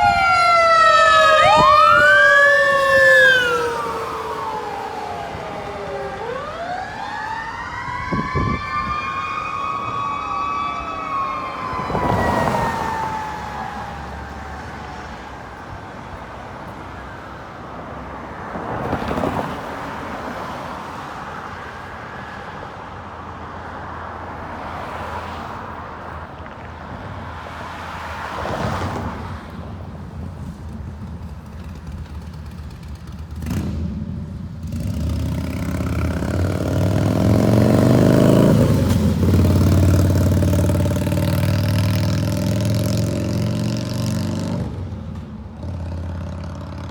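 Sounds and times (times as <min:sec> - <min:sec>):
vehicles passing by: 0:00.0 - 0:46.9
large vehicle engine accelerating: 0:30.0 - 0:46.9.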